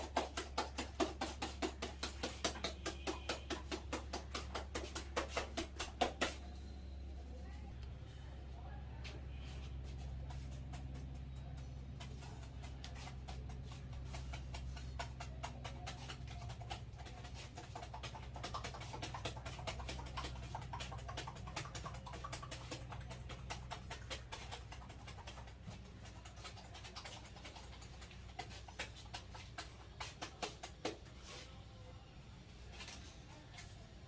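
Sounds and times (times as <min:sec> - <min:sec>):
hands tapping on head and hair: 0:00.0 - 0:06.5
steady low hum: 0:04.0 - 0:34.0.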